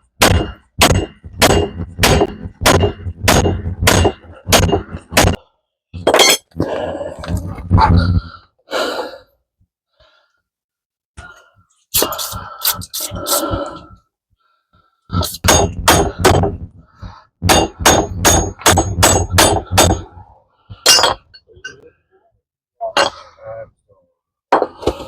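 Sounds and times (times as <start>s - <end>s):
hammer striking steel hub: 0.2s - 5.4s, 15.3s - 16.6s, 17.4s - 20.1s
metal clattering: 0.2s - 5.4s.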